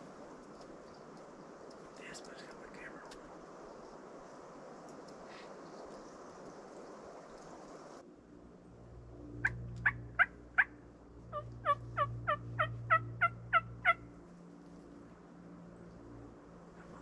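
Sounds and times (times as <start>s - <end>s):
turkey yelps: 9.8s - 10.7s, 11.3s - 14.0s.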